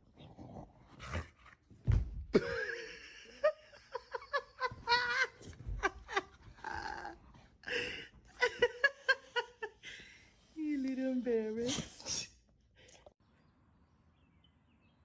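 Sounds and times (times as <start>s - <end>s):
thump: 1.8s - 2.4s.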